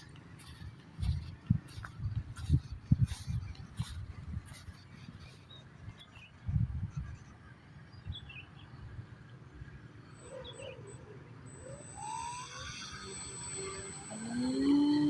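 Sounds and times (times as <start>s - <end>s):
wind buffeting microphone: 0.0s - 7.3s
model plane motor whine: 11.2s - 15.0s.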